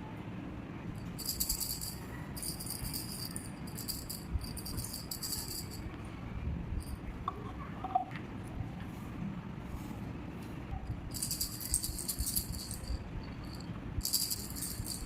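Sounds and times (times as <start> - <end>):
shaker rattling: 1.0 - 5.9, 10.9 - 15.0.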